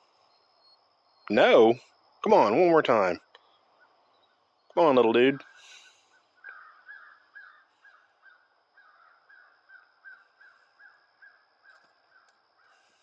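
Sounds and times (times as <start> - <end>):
bird chirping faintly: 3.2 - 13.0.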